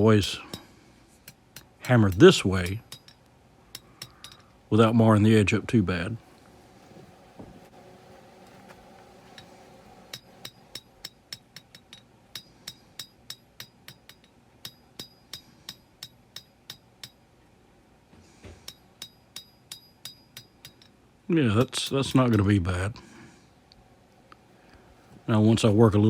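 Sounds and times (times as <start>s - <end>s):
hammer striking steel on anvil: 0.0s - 4.5s, 10.1s - 17.2s, 18.6s - 21.0s.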